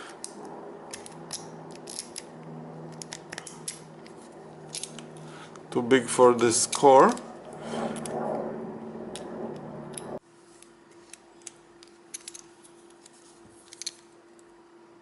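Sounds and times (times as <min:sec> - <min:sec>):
low steady hum: 0:00.0 - 0:10.2.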